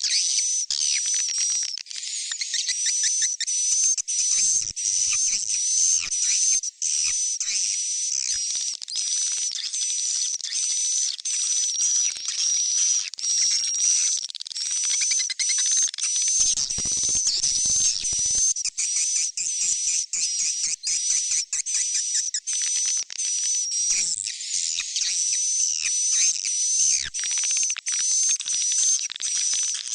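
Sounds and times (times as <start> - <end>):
bird chicks twittering: 14.9 - 22.8.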